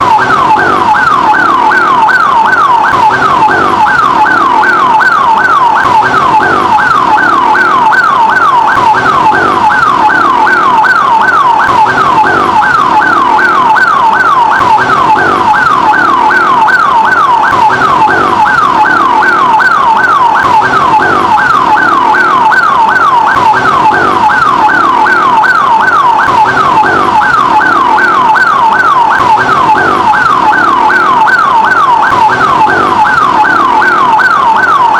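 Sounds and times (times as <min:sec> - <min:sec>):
ambulance siren yelping: 0:00.0 - 0:34.9.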